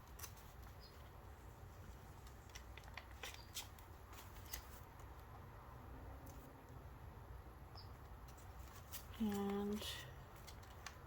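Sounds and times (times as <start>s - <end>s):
paper rustling: 0.0s - 5.2s, 8.2s - 11.0s.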